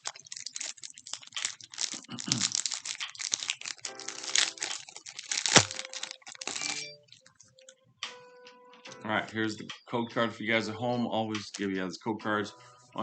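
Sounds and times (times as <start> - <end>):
sharp crack of foil: 0.0 - 7.3
foil wrapper tearing and crinkling: 0.0 - 7.4.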